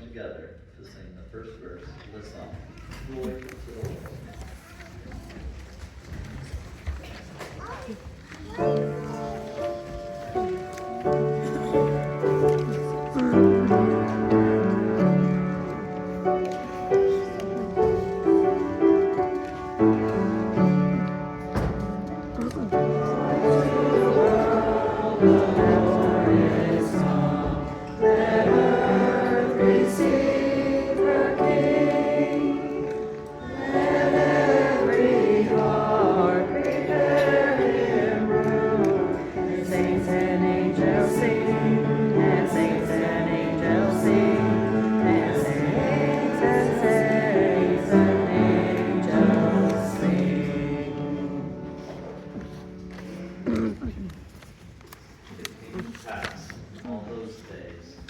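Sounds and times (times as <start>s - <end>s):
congregation singing a hymn: 8.7s - 53.6s.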